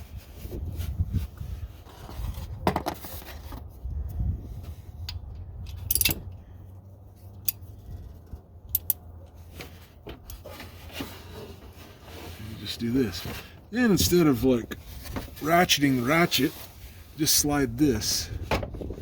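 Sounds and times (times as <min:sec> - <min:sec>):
wind on microphone: 0:00.0 - 0:02.7, 0:03.6 - 0:06.3, 0:17.8 - 0:19.0
metallic clicks and scrapes: 0:05.0 - 0:06.4, 0:07.2 - 0:12.4.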